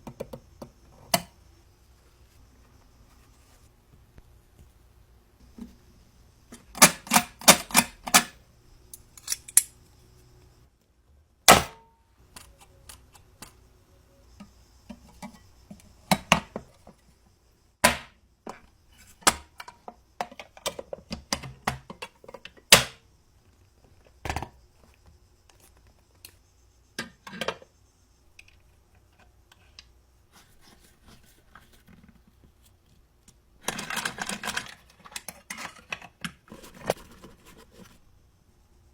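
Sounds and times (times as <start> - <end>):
clicks and knocks of metal parts: 6.5 - 9.8, 33.6 - 36.4.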